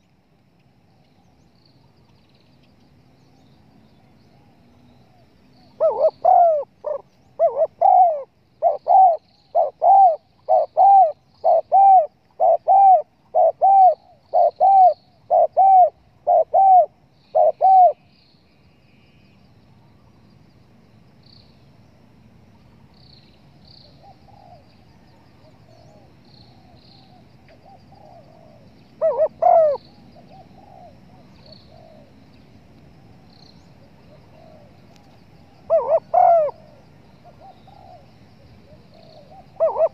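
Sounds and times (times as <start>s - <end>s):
dove cooing: 5.8s - 18.1s, 23.9s - 32.2s, 33.8s - 34.8s, 35.7s - 39.9s.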